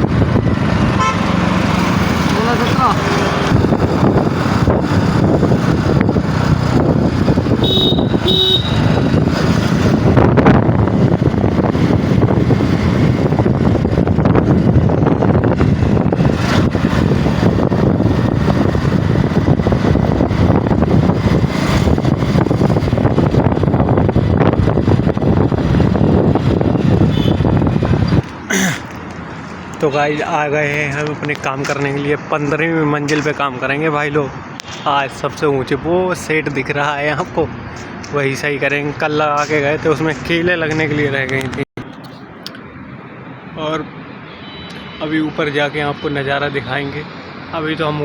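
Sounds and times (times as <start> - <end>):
road traffic noise: 0.0 - 48.0
short horn toots: 7.6 - 9.0.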